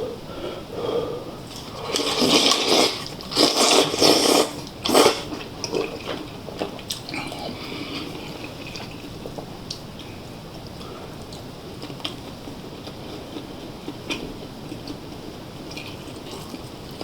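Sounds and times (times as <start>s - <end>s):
wet slurping and biting: 1.6s - 6.0s
chewing and lip-smacking: 15.7s - 17.0s.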